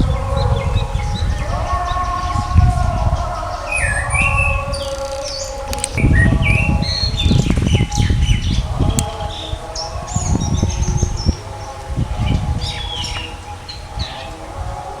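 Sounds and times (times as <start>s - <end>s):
bird singing: 0.0s - 15.0s.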